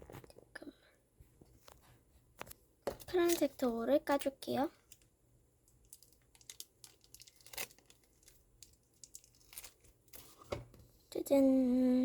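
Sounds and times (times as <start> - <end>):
plastic wrapper crinkling and tearing: 5.7 - 10.5.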